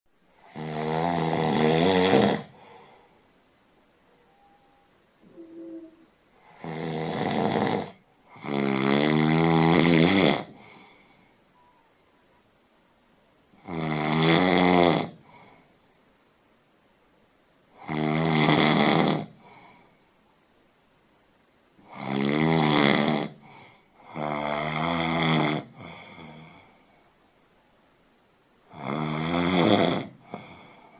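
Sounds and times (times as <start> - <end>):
person snoring: 0.3 - 3.0, 5.3 - 11.2, 13.6 - 15.6, 17.8 - 19.9, 21.8 - 26.8, 28.7 - 30.9.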